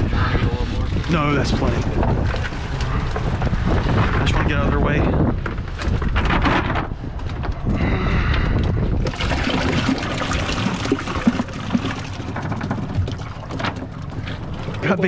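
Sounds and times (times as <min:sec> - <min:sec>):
water trickling and splashing: 0:09.0 - 0:15.0.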